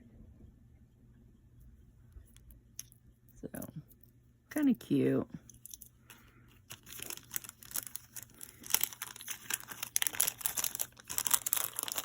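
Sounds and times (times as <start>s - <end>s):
plastic packaging crinkling: 6.5s - 12.0s.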